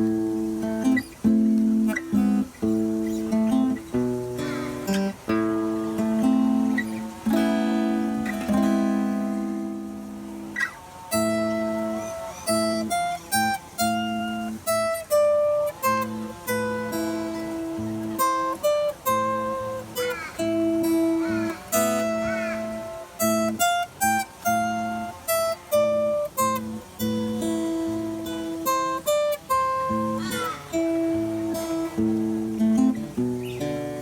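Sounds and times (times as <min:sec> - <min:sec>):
acoustic guitar playing: 0:00.0 - 0:34.0.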